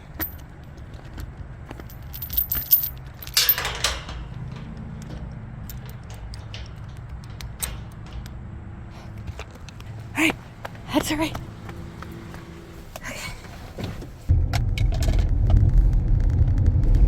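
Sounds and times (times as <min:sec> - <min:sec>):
metal chain and lock jangling: 0:00.0 - 0:13.3
low engine hum: 0:00.0 - 0:17.0.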